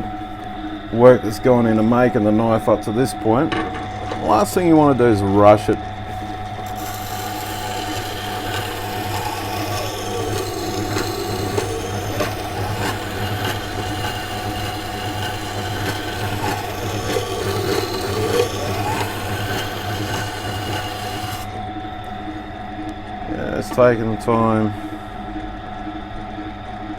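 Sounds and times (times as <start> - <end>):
grinding wheel humming: 0.0 - 22.4
knife blade rubbing on stone: 6.2 - 21.6.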